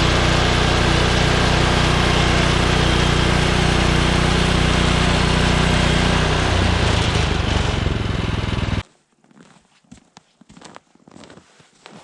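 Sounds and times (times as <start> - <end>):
small gas engine running: 0.0 - 8.8.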